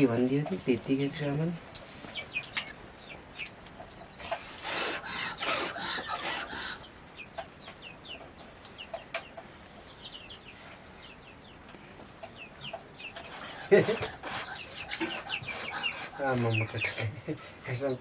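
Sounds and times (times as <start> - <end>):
chickens clucking: 0.0 - 18.0
high falling peeps: 4.2 - 7.3.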